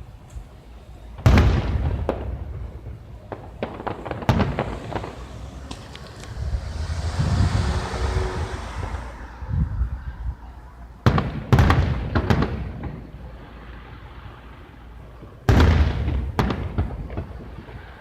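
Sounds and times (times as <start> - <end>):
fireworks bangs: 0.7 - 18.0
low rumble: 4.5 - 10.8.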